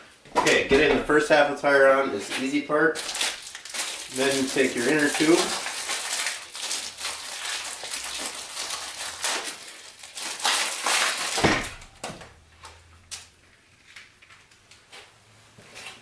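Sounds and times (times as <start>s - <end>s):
inner tube rustling and crinkling: 0.4s - 12.0s.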